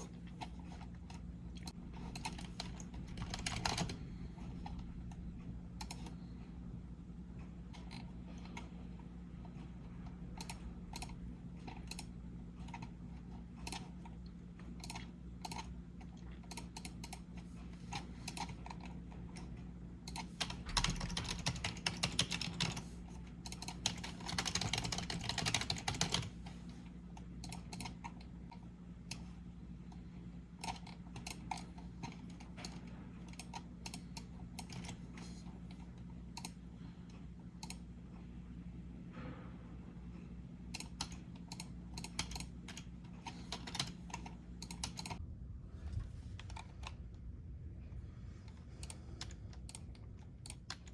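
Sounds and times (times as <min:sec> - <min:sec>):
keyboard typing: 0:00.0 - 0:05.2, 0:05.8 - 0:06.2, 0:13.6 - 0:14.2, 0:14.8 - 0:19.5, 0:20.1 - 0:26.4, 0:27.4 - 0:29.3, 0:30.6 - 0:36.6, 0:40.8 - 0:45.2, 0:48.8 - 0:50.9
low steady hum: 0:00.0 - 0:50.9.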